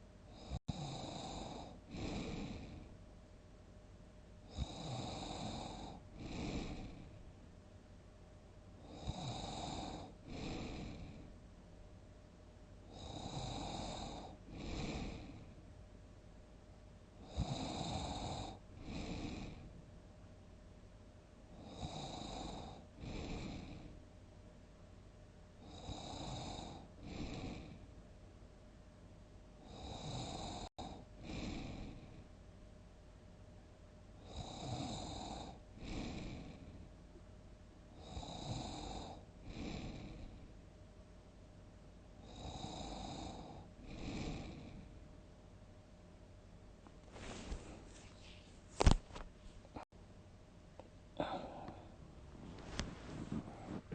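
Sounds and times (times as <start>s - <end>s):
person snoring loudly: 0.4s - 2.9s, 4.5s - 7.1s, 8.8s - 11.2s, 12.9s - 15.5s, 17.2s - 19.6s, 21.6s - 23.8s, 25.6s - 27.8s, 29.6s - 32.1s, 34.2s - 36.6s, 38.0s - 40.4s, 42.2s - 44.8s.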